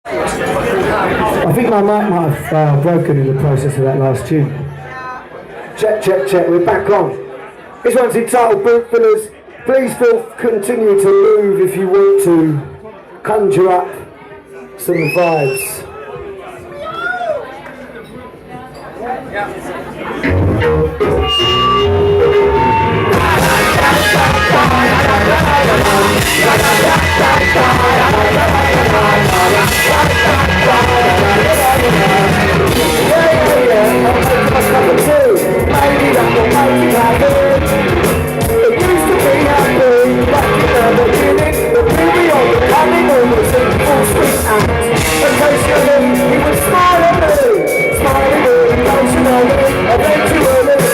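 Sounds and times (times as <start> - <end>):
rock band playing live: 20.2 - 50.9.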